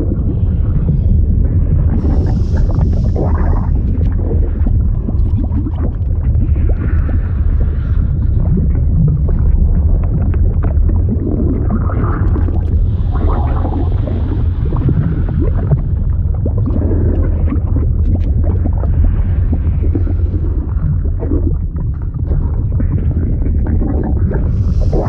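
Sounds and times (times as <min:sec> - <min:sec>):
deep liquid rumble: 0:00.0 - 0:25.0
small crackles and pops: 0:01.9 - 0:13.8.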